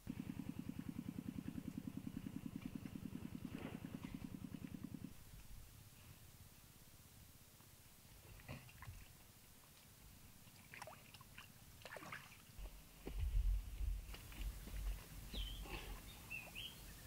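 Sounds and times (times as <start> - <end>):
low rumble: 0.0 - 5.6, 12.6 - 17.0
water sloshing and splashing: 10.4 - 13.2.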